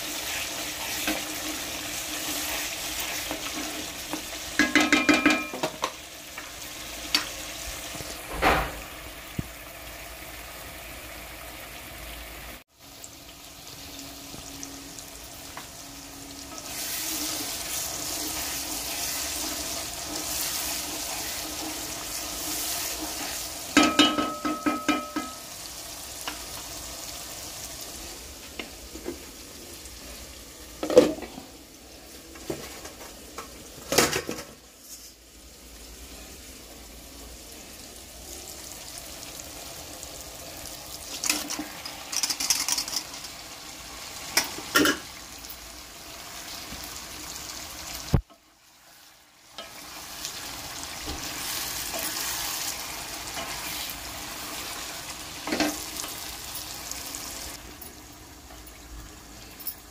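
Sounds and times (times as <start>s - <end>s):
food sizzling in hot oil: 0.0s - 59.9s
metal utensil clinking against pan: 4.6s - 5.9s, 23.8s - 25.4s.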